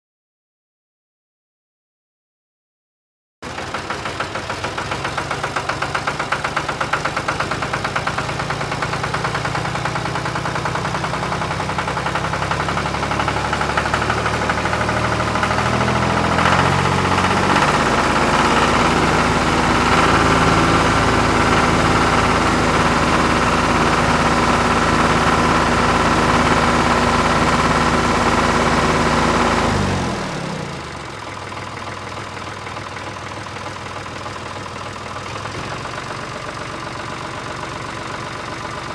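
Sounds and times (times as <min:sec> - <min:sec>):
farm machinery engine running: 0:03.4 - 0:38.9.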